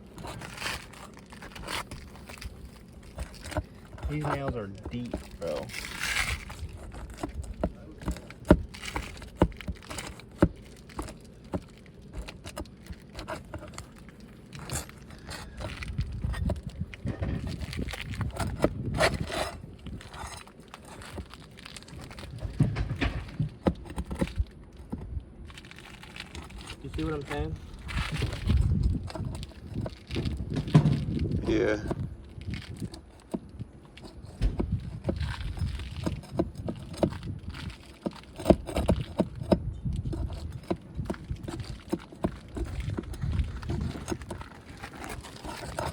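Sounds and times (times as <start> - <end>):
pry bar scraping and knocking: 0.0 - 45.9.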